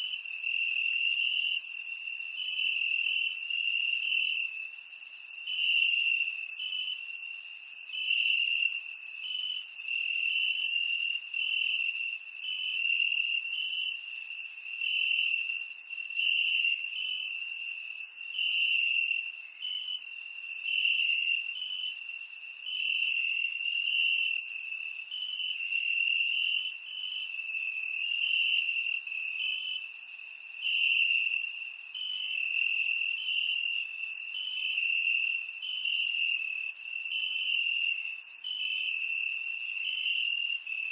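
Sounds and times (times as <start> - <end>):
crickets chirping: 0.0 - 40.9.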